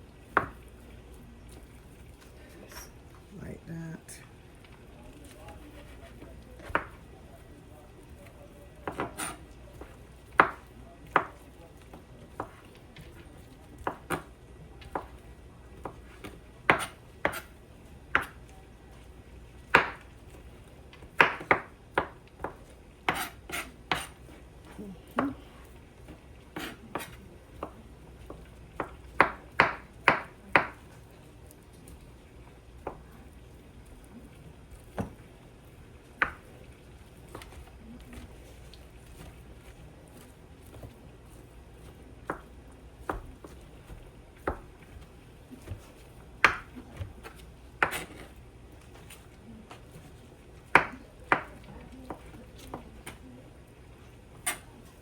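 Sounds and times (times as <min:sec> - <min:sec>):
knife chopping on cutting board: 0:00.3 - 0:00.6, 0:06.6 - 0:07.1, 0:08.8 - 0:15.2, 0:15.8 - 0:18.4, 0:19.7 - 0:20.3, 0:20.9 - 0:25.4, 0:26.1 - 0:30.9, 0:34.9 - 0:35.2, 0:36.2 - 0:36.6, 0:39.1 - 0:49.8, 0:50.6 - 0:53.2, 0:54.4 - 0:54.7.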